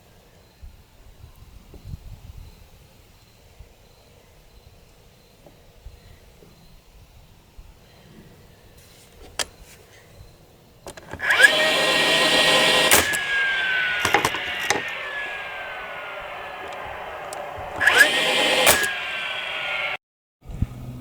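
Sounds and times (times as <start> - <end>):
power tool running on wood: 10.9 - 20.0
sharp clicks: 10.9 - 20.0.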